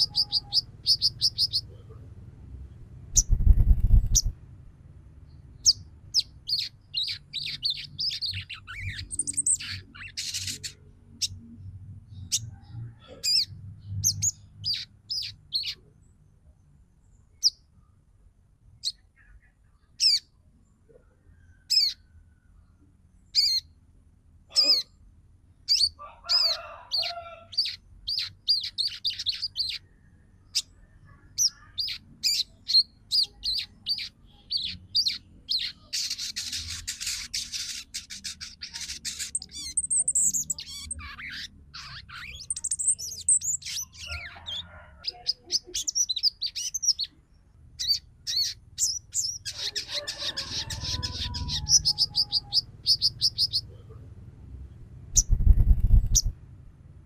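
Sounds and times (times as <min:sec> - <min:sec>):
bird chirping and trilling: 0:00.0 - 0:01.8, 0:03.1 - 0:04.4, 0:05.6 - 0:11.4, 0:13.1 - 0:15.9, 0:18.8 - 0:20.3, 0:21.6 - 0:22.1, 0:23.3 - 0:23.8, 0:25.6 - 0:29.9, 0:31.3 - 0:47.2, 0:47.8 - 0:53.8, 0:55.1 - 0:56.3.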